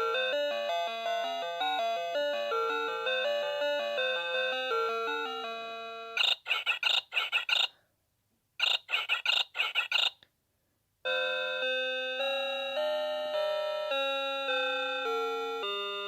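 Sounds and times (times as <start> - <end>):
alarm clock chirping beeps: 6.2 - 7.7, 8.6 - 10.2.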